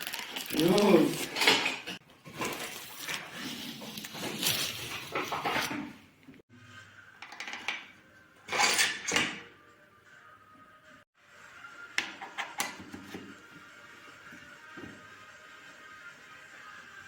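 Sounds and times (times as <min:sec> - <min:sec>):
packaging rustling and scraping: 0:00.0 - 0:06.2.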